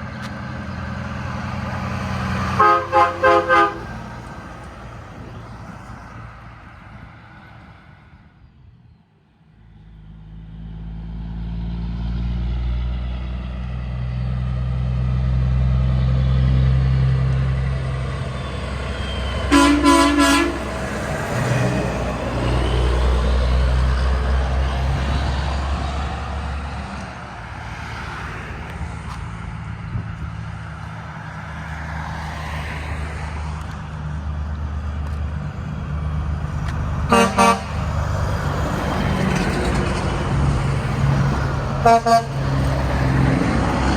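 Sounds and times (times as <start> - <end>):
heavy truck engines droning: 0.0 - 43.9
truck horn toots: 2.5 - 4.1, 19.0 - 21.5, 37.1 - 37.9, 41.8 - 42.7.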